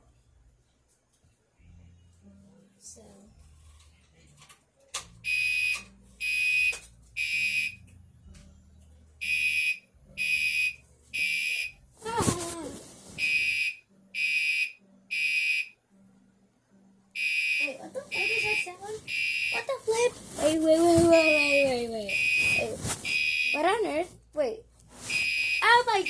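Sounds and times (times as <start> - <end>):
fire alarm horn beeps: 5.2 - 7.8, 9.2 - 11.7, 13.2 - 15.8, 17.2 - 19.7, 22.1 - 23.7, 25.1 - 25.8.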